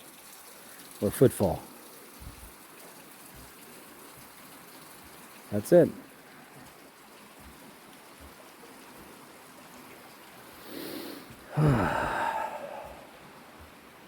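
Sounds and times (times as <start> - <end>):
running stream water: 0.0 - 14.0
person drawing breath: 10.6 - 13.1
person sighing: 10.7 - 13.1.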